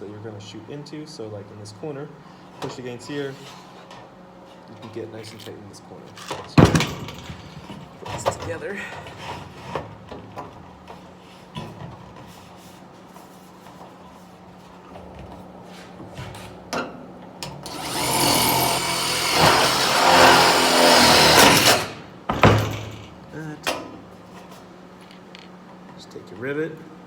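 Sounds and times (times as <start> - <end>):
rivet tool motor running: 17.6 - 23.1.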